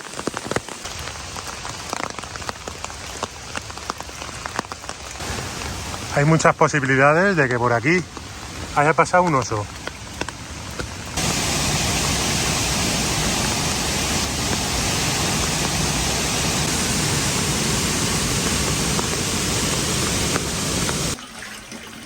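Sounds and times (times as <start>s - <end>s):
running water rushing: 5.0s - 21.5s.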